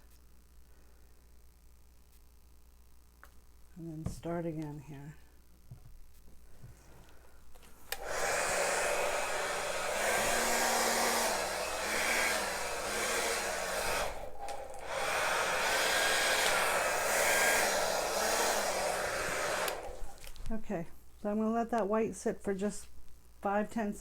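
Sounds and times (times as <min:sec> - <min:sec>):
blow dryer humming: 0:07.8 - 0:20.5.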